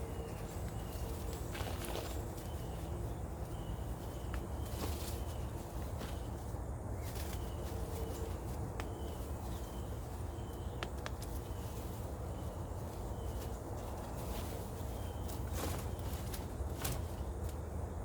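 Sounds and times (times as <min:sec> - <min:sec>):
sharp clicks and snaps: 0:10.8 - 0:11.4.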